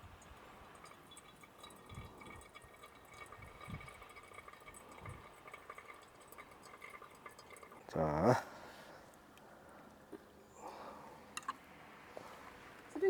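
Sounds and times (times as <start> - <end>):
water pouring and dripping: 0.0 - 8.5.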